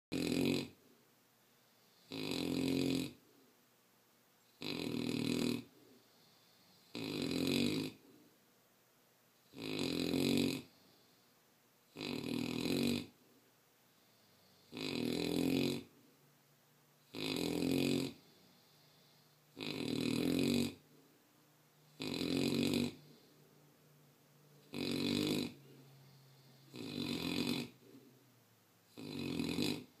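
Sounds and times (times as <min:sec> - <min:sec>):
puppy snoring: 0:00.1 - 0:01.0, 0:01.6 - 0:03.4, 0:04.4 - 0:08.3, 0:09.4 - 0:13.3, 0:13.9 - 0:16.1, 0:17.0 - 0:21.1, 0:21.8 - 0:23.6, 0:24.5 - 0:28.2, 0:28.8 - 0:30.0
quiet breaths: 0:00.1 - 0:30.0.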